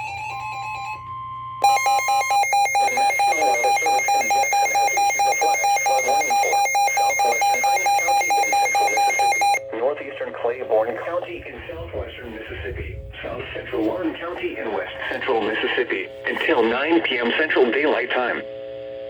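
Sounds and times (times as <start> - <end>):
pulsing electronic alert tone: 1.6 - 9.6
quiet steady tone: 1.6 - 9.7.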